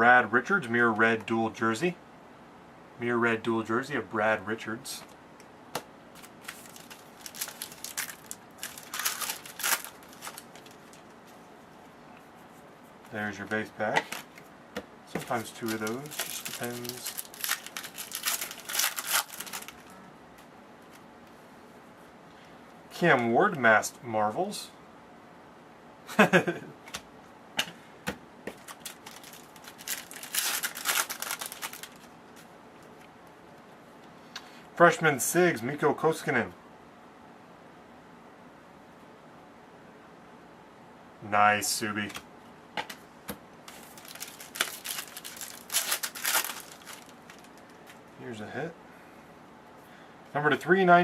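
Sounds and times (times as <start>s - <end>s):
packaging crinkling and rustling: 6.2s - 11.3s, 15.2s - 19.9s, 28.5s - 32.5s, 43.7s - 48.0s.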